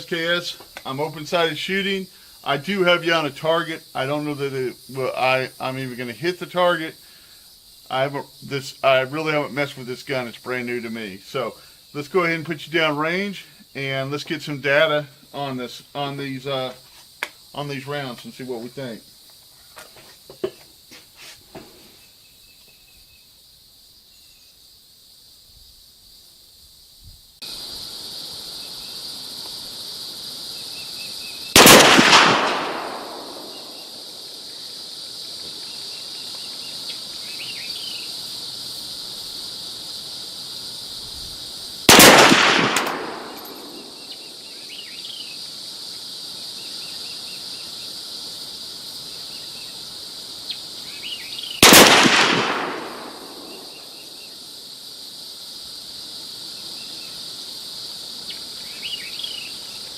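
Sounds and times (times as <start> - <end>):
rifle shots: 31.6 - 34.1, 41.9 - 44.1, 51.6 - 54.0.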